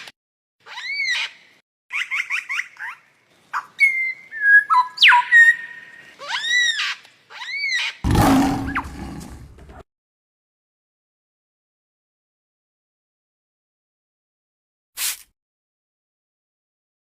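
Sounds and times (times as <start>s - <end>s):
loud deep roar: 8.1s - 9.6s.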